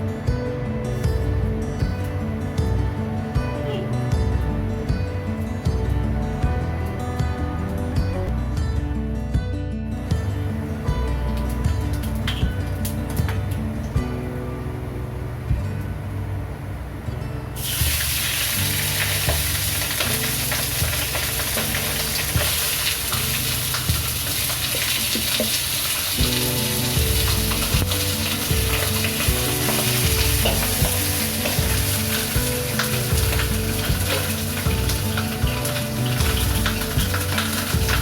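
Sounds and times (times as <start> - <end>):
background music: 0.0 - 38.0
food sizzling in oil: 17.6 - 38.0.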